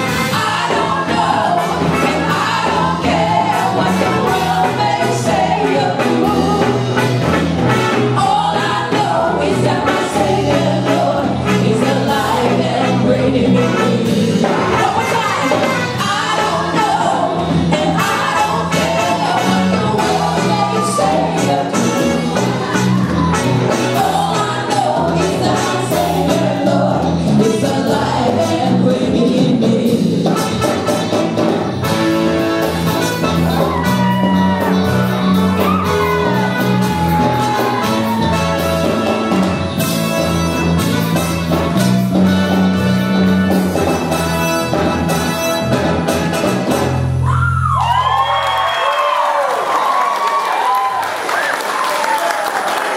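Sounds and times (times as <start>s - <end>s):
steady drum beat: 0.0s - 47.1s
bass line: 0.0s - 48.8s
gospel band playing: 0.0s - 52.9s
person singing: 8.2s - 30.5s.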